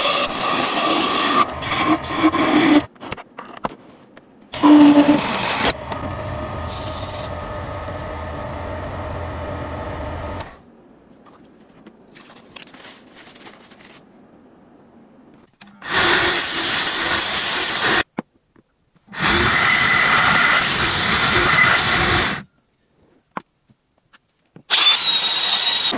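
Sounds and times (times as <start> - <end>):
harsh grinding bursts: 0.0 - 2.9, 4.6 - 10.6, 19.2 - 22.4
power tool motor: 4.6 - 10.6, 24.7 - 25.9.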